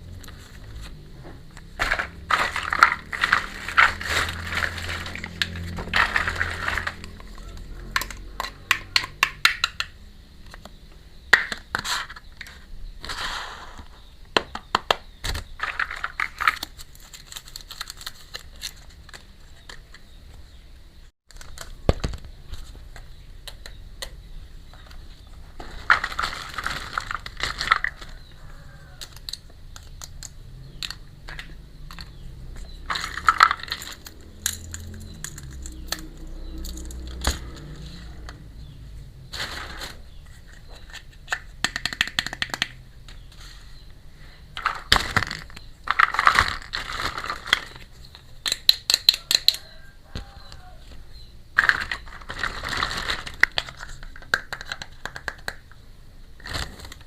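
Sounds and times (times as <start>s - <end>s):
packaging crinkling: 1.7s - 8.3s, 15.6s - 19.8s, 25.6s - 29.9s, 51.6s - 55.2s
plastic toy pieces clicking: 1.7s - 10.0s, 15.6s - 20.0s, 29.0s - 32.2s, 32.8s - 38.4s, 40.5s - 42.8s, 44.6s - 49.6s, 51.6s - 55.8s.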